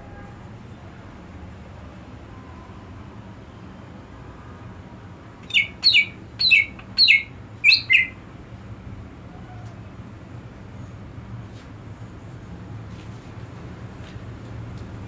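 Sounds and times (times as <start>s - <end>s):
bird chirping downward: 5.4s - 8.2s.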